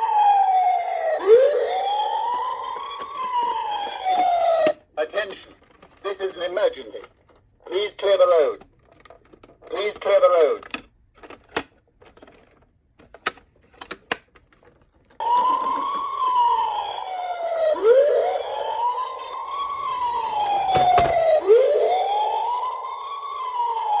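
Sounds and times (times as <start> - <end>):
emergency vehicle siren wailing: 0.0 - 5.5, 15.2 - 24.0.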